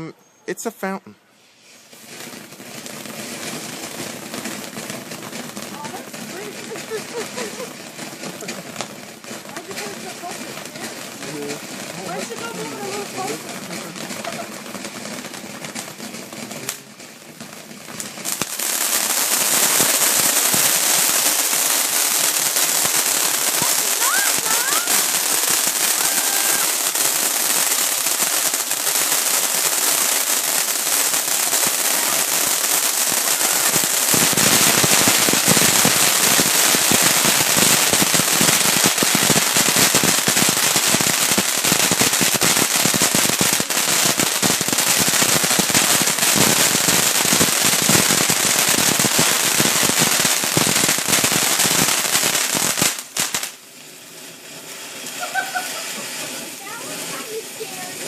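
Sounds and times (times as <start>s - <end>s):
firework crackling: 0.0s - 58.0s
firework fountain hissing: 0.0s - 58.0s.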